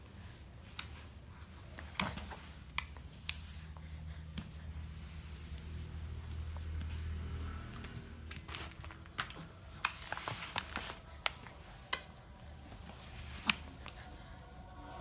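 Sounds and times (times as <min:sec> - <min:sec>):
low hum: 0:03.6 - 0:15.0.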